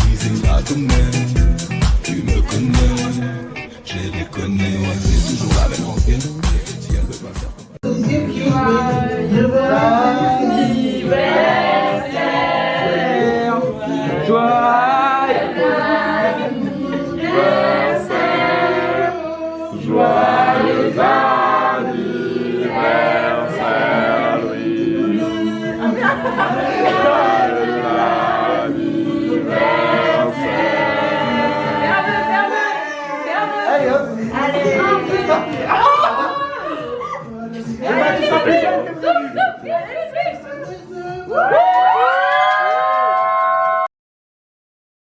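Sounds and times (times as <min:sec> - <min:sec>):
choir singing: 0:07.9 - 0:39.4.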